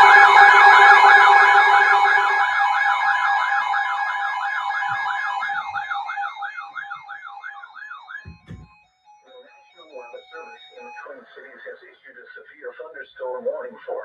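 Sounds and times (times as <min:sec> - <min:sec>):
warbling electronic siren: 0:00.0 - 0:11.6
steady high tone: 0:00.0 - 0:11.8.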